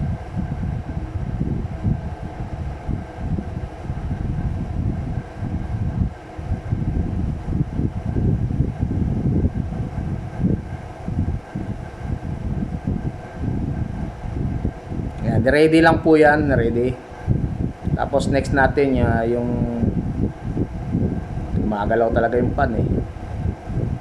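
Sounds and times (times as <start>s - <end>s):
faint steady hum: 0.0s - 24.0s
wind buffeting microphone: 0.0s - 24.0s.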